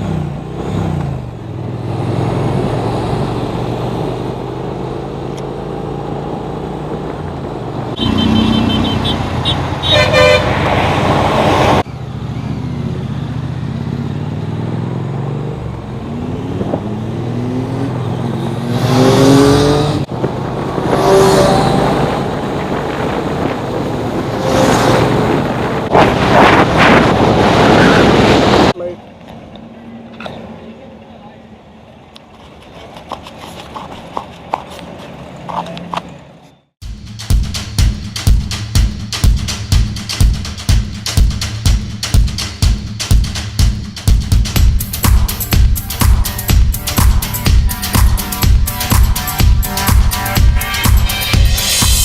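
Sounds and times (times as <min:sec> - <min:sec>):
vehicle horns tooting: 0:08.0 - 0:10.7.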